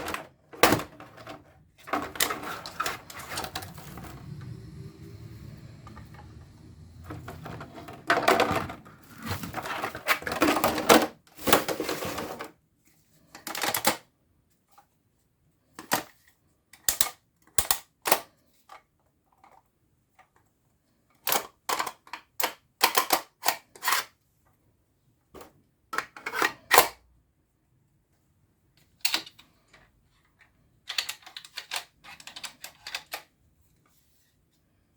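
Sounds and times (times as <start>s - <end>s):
packaging rustling and crinkling: 8.1s - 12.5s.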